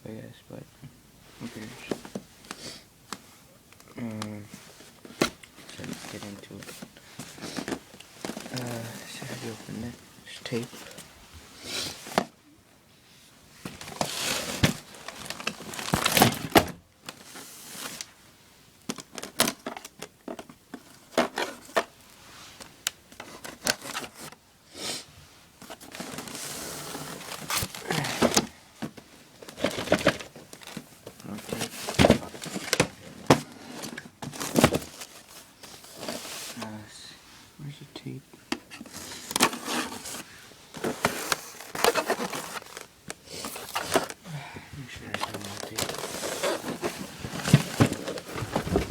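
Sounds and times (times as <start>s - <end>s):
cardboard box being handled: 25.7s - 36.7s, 38.8s - 44.2s, 45.0s - 48.9s.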